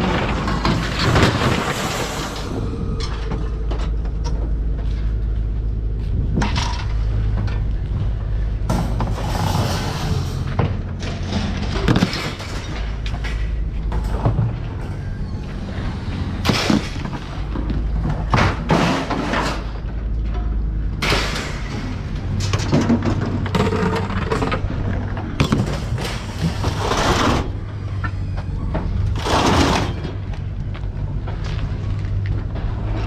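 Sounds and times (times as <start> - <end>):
scrap metal clanking onto pile: 0.0 - 2.6, 8.7 - 14.6, 18.0 - 24.6, 29.1 - 30.3
low engine rumble: 0.0 - 33.0.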